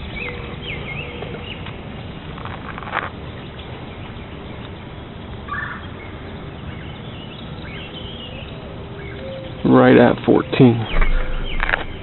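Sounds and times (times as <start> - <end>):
outdoor background hiss: 0.0 - 12.0
bird call: 10.5 - 12.0.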